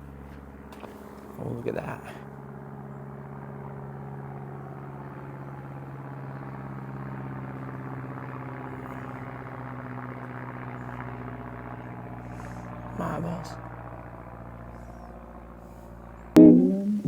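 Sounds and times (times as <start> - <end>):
engine running steadily: 5.7 - 16.3.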